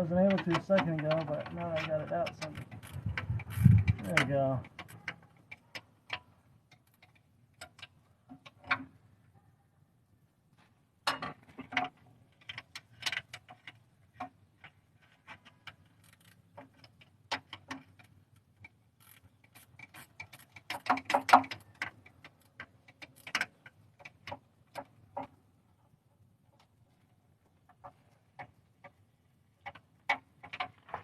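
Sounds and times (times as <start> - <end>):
ratcheting wrench clicking: 2.2 - 4.2, 15.8 - 16.8, 19.0 - 21.6.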